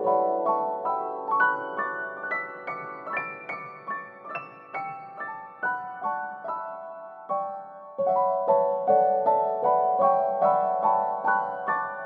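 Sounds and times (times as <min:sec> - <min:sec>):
gentle piano melody: 0:00.0 - 0:12.0.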